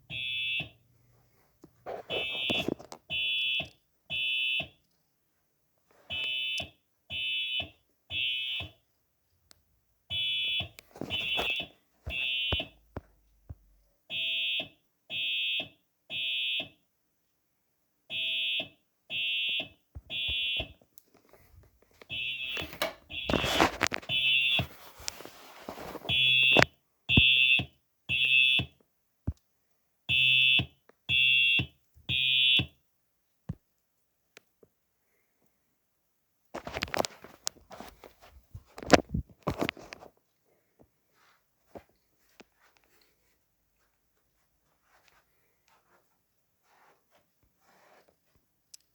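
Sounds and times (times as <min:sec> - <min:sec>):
fire alarm horn tones: 0:00.1 - 0:00.8, 0:02.1 - 0:04.7, 0:06.1 - 0:08.8, 0:10.1 - 0:12.7, 0:14.1 - 0:16.6, 0:18.1 - 0:20.7, 0:22.1 - 0:24.7, 0:26.1 - 0:28.8, 0:30.1 - 0:32.7
rustling noise: 0:01.1 - 0:03.0, 0:10.8 - 0:12.5, 0:21.1 - 0:26.6, 0:36.5 - 0:48.5.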